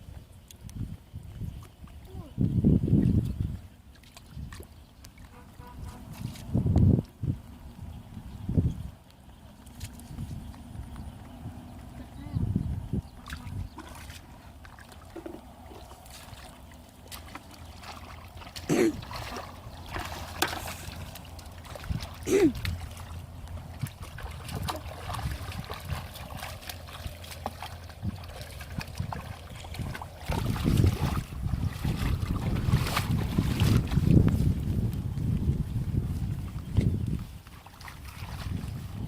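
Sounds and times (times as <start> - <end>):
water trickling and splashing: 0.0 - 8.2, 9.0 - 39.0
short sharp water splashes: 13.2 - 34.4, 37.5 - 38.9.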